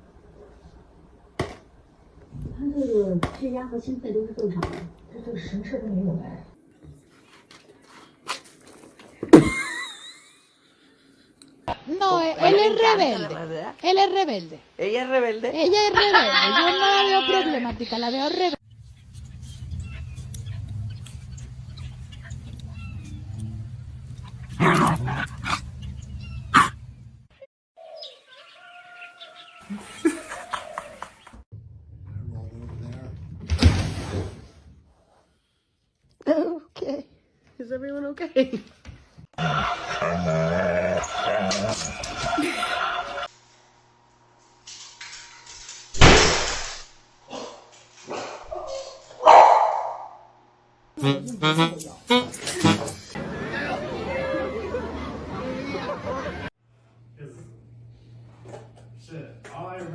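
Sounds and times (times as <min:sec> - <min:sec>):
dog barking: 0:26.5 - 0:26.8, 0:48.1 - 0:50.2.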